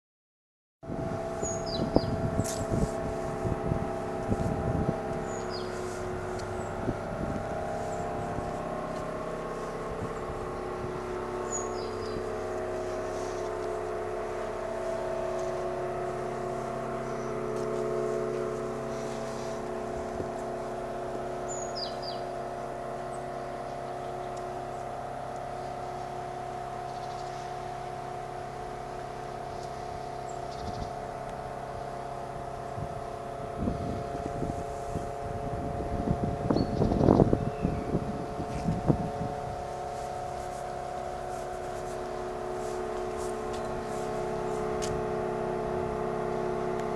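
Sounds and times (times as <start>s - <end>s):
fountain droning: 0.8s - 46.9s
birds chirping: 1.4s - 2.8s, 5.0s - 17.8s, 21.2s - 24.9s, 26.8s - 27.6s, 29.6s - 31.1s, 36.5s - 38.5s.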